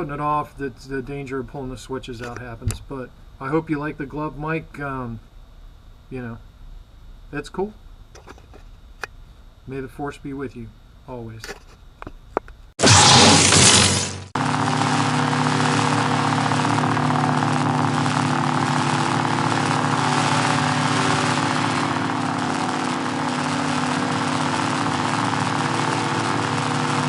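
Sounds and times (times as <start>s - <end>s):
lightsaber buzzing hum: 0.0s - 27.0s
lightsaber ignition burst: 12.8s - 27.0s.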